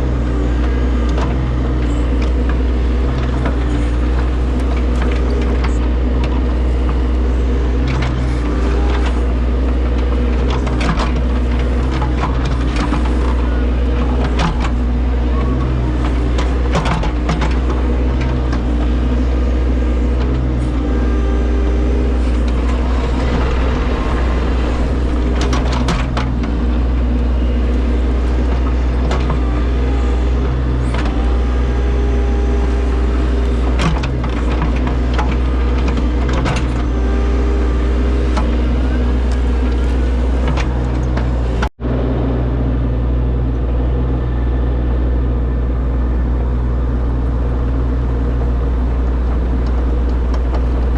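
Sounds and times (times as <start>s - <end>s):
large engine running: 0.0s - 50.9s
knocks and clanks: 22.2s - 27.3s.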